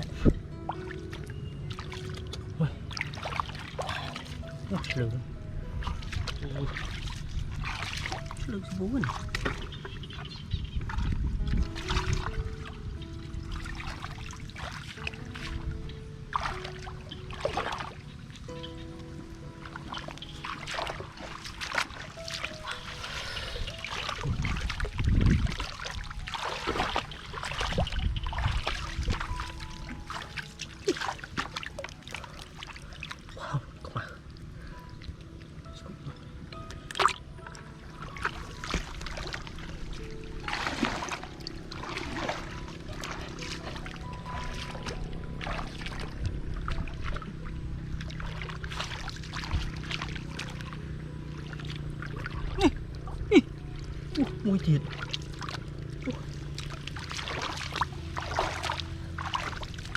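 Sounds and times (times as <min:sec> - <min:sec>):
water sloshing and splashing: 0:00.0 - 0:59.9
steady low hum: 0:12.6 - 0:59.9.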